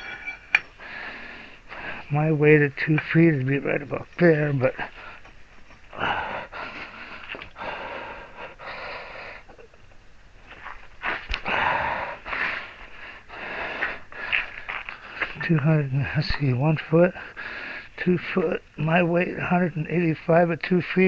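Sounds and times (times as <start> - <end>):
man breathing hard and wheezing: 0.0 - 2.1, 4.8 - 9.7, 11.0 - 15.4, 17.1 - 18.0.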